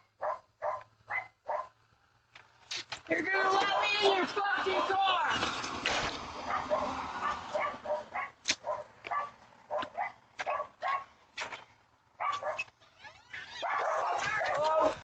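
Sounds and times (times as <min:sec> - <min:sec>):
dog barking: 0:00.2 - 0:01.8, 0:06.4 - 0:11.2, 0:12.2 - 0:12.7, 0:13.5 - 0:14.6.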